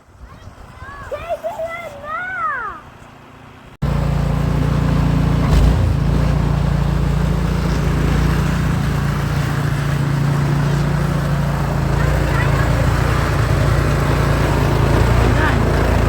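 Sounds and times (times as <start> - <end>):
snowblower engine running: 3.8 - 16.0.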